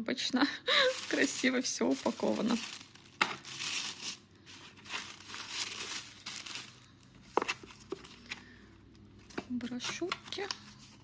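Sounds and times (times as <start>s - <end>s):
packaging rustling and crinkling: 0.7s - 8.6s.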